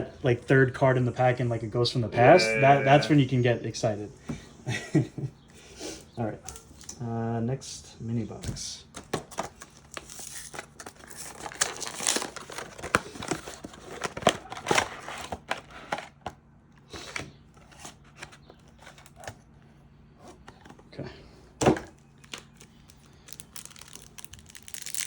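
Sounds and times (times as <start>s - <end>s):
plastic foil wrappers crinkling: 9.9s - 14.3s, 22.2s - 25.0s.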